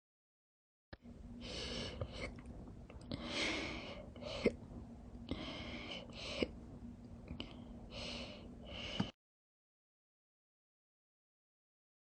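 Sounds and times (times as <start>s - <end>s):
noisy breaths: 1.3s - 9.2s.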